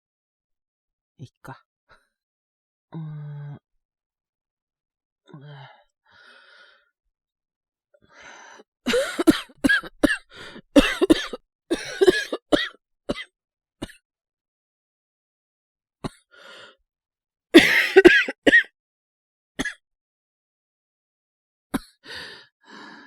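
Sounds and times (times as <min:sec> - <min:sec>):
man coughing: 0:08.9 - 0:10.2, 0:10.8 - 0:12.7, 0:17.6 - 0:18.7.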